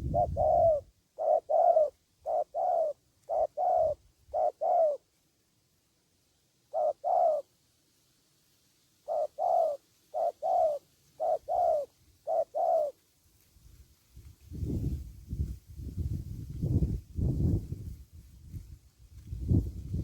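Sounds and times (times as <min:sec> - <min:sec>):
dove cooing: 0:00.0 - 0:05.1, 0:06.7 - 0:07.5, 0:09.0 - 0:13.0.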